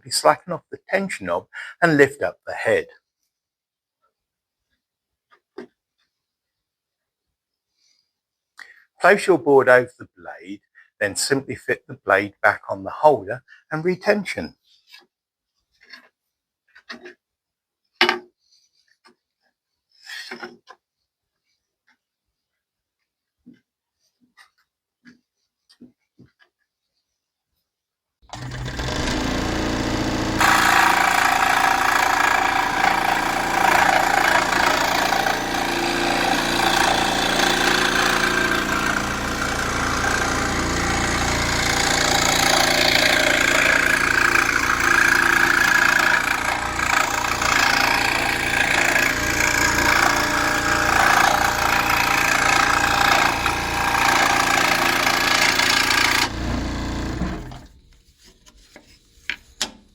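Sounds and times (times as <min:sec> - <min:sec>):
scroll saw motor: 0:28.3 - 0:57.8
saw blade cutting board: 0:28.4 - 0:57.8.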